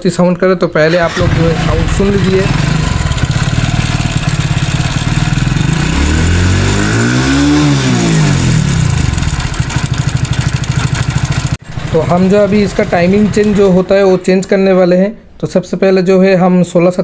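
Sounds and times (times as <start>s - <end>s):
motorcycle engine idling and revving: 0.9s - 14.2s.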